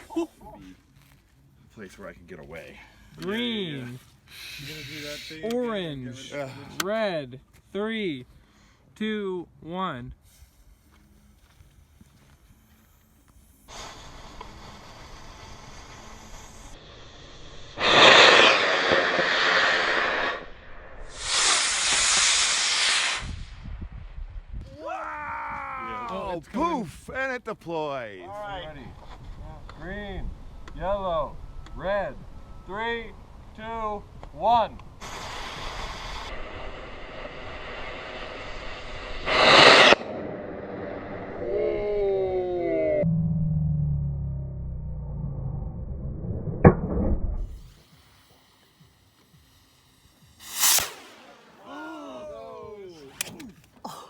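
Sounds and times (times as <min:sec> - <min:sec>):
rocket motor hissing rush: 0:04.3 - 0:05.5, 0:13.5 - 0:23.6, 0:35.0 - 0:41.6, 0:47.4 - 0:52.4
loud rushing noise: 0:35.3 - 0:41.4, 0:50.4 - 0:51.7.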